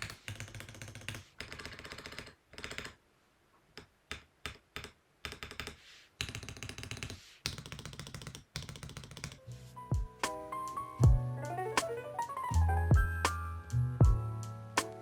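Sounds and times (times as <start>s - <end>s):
mechanical keyboard typing: 0.0s - 3.0s.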